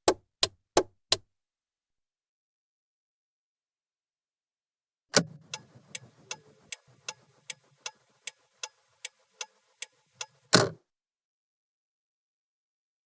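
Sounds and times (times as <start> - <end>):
indicator clicker ticking: 5.2 - 10.5
turn signal stalk click: 5.2 - 10.6.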